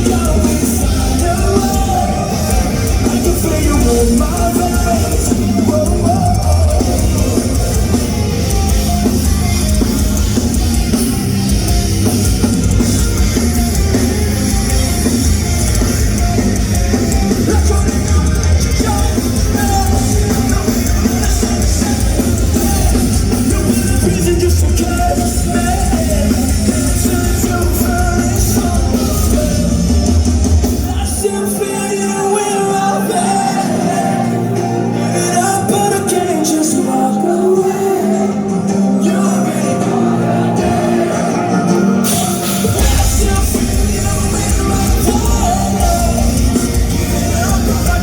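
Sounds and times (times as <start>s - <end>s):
drum kit: 0.0s - 37.0s, 37.7s - 48.0s
rock band playing live: 0.0s - 48.0s.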